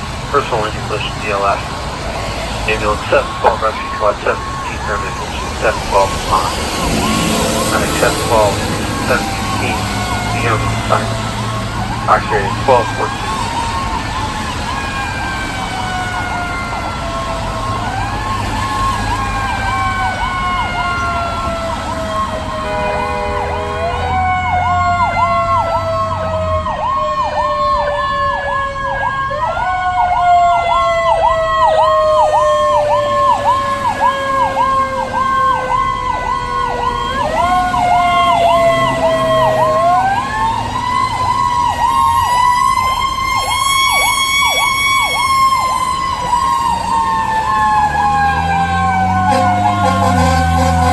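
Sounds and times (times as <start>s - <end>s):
engine rumble: 0.0s - 13.9s
wailing siren: 0.0s - 50.9s
electronic siren yelp: 0.3s - 50.9s
air horn blast: 49.2s - 50.9s.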